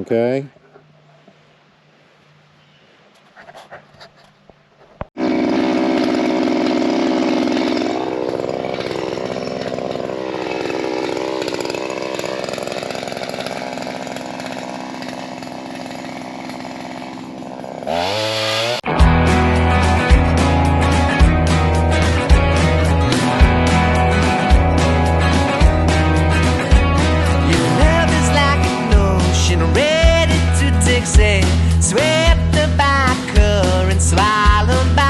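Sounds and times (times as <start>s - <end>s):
two-stroke pole saw engine: 5.2s - 35.0s.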